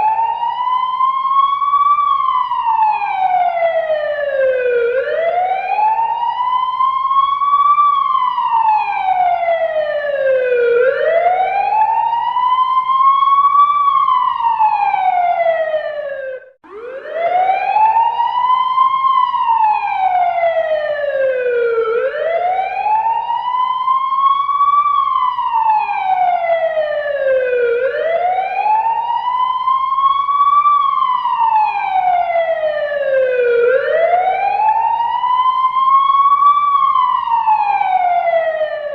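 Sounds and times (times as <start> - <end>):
fire truck siren wailing: 0.0 - 38.9.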